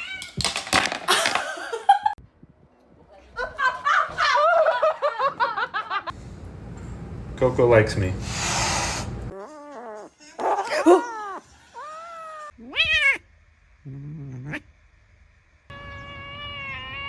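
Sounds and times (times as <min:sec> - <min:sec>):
cat meowing and yowling: 0:09.4 - 0:13.2, 0:15.7 - 0:17.0.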